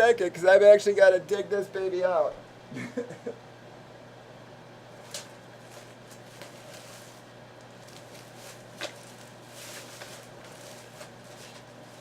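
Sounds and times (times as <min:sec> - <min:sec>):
packaging rustling: 0:05.0 - 0:12.0.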